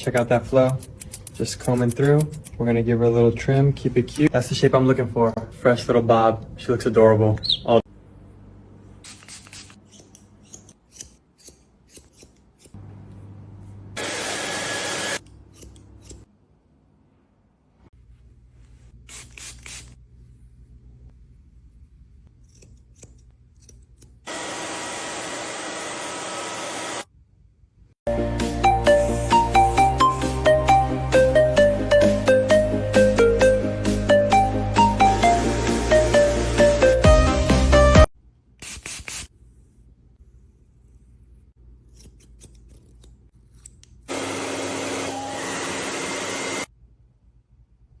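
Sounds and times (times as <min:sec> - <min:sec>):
hair dryer blowing: 0:14.0 - 0:15.2, 0:24.3 - 0:27.0, 0:44.1 - 0:46.7.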